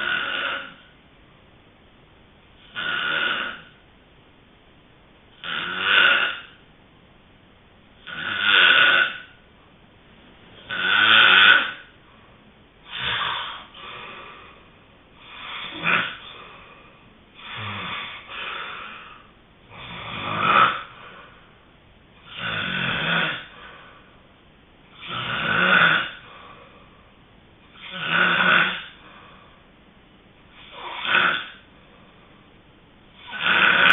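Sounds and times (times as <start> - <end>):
person snoring: 0.0 - 0.9, 2.6 - 3.8, 5.4 - 6.6, 8.0 - 9.4, 10.6 - 11.9, 12.8 - 14.6, 15.2 - 21.3, 22.2 - 23.9, 25.0 - 26.5, 27.7 - 29.1, 30.6 - 31.7, 33.2 - 33.9.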